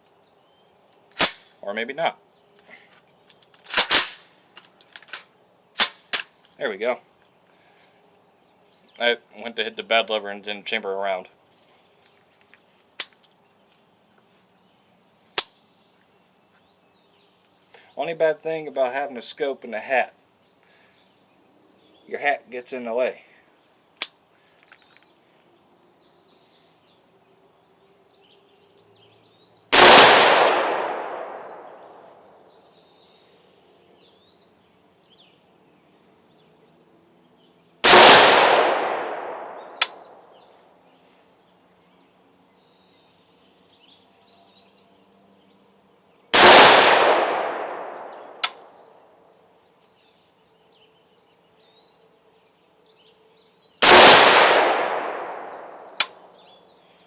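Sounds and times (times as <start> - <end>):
rifle shots echoing: 1.2 - 1.5, 3.7 - 4.2, 29.8 - 32.0, 37.8 - 40.2, 46.4 - 48.6, 53.8 - 56.2.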